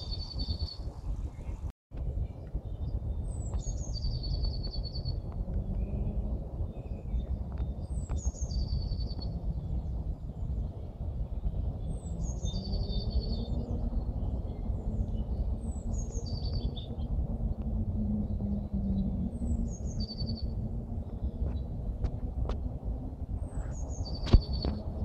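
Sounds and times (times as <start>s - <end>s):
low background rumble: 0.0s - 25.0s
songbird singing a trill: 2.3s - 17.1s, 18.0s - 21.7s.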